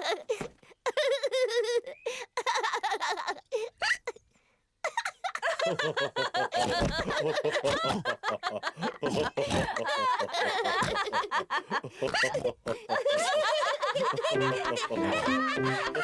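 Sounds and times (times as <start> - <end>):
cartoon characters laughing: 4.9 - 16.0.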